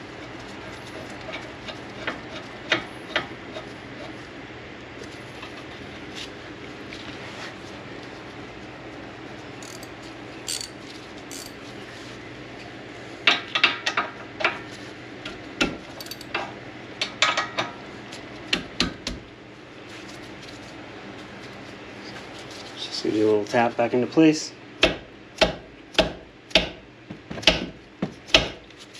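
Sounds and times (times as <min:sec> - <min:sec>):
steady low hum: 0:00.0 - 0:28.9
metal tools clinking: 0:09.6 - 0:11.6, 0:16.0 - 0:16.4.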